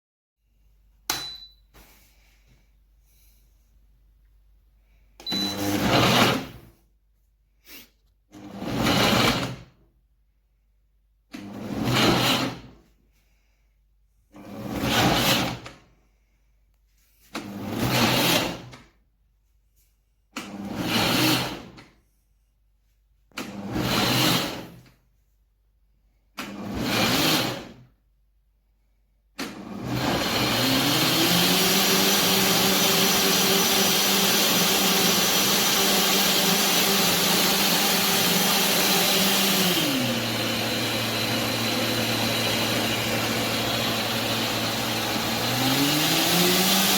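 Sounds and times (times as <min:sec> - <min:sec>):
blender motor whining: 0:05.4 - 0:06.6, 0:29.4 - 0:46.9.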